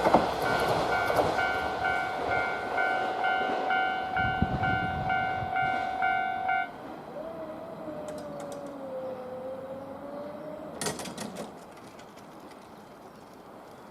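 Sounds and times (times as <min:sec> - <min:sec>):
level crossing alarm ringing: 0:00.4 - 0:06.9
clatter of clicks: 0:08.1 - 0:08.8.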